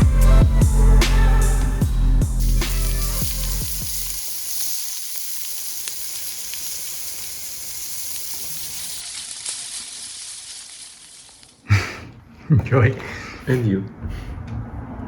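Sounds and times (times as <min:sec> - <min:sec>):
background music: 0:00.0 - 0:04.2
wood fire crackling: 0:02.4 - 0:12.2.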